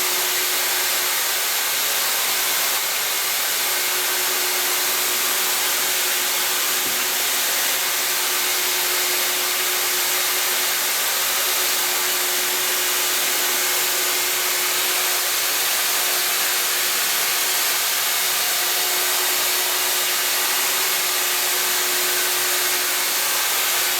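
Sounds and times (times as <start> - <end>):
industrial vacuum cleaner running: 0.0 - 23.9.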